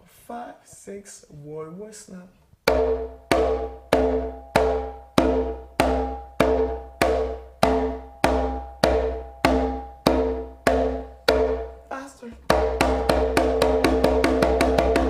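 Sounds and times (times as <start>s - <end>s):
hand drum slaps: 2.7s - 11.7s, 12.4s - 15.0s.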